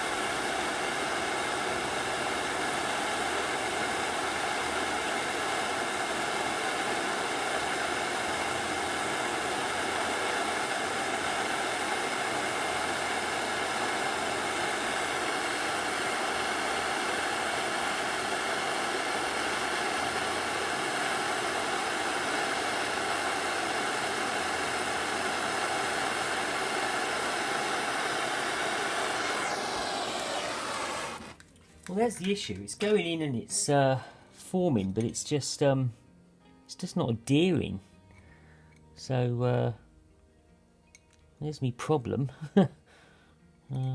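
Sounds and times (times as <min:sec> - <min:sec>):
blowtorch flame hissing: 0:00.0 - 0:31.4.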